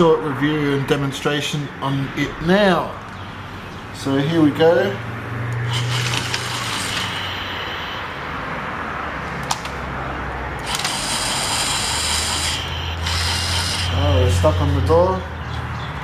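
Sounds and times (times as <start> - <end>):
toy train motor whirring: 5.6 - 8.1, 10.6 - 14.4
sharp click: 9.4 - 9.8.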